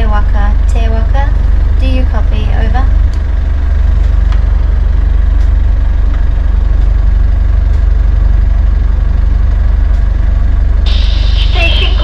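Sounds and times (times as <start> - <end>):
boat engine humming: 0.0 - 12.0.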